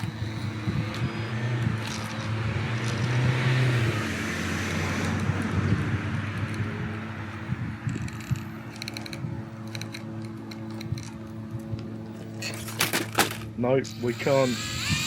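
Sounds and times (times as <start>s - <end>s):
electric motor humming: 13.9s - 15.0s.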